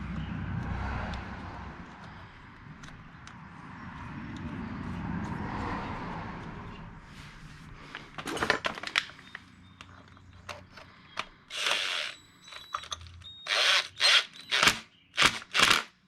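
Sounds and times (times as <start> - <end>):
tools and metal parts clattering: 8.0 - 14.8
ratchet wrench clicking: 11.5 - 15.9.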